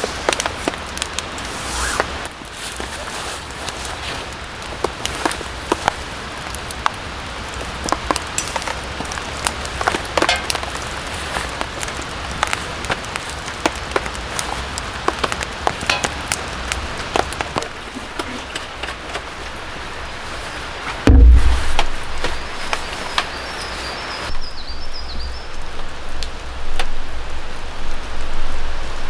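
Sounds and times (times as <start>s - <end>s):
raindrops tapping on fabric: 0.0s - 19.5s
rain hissing on a tent: 0.0s - 29.0s.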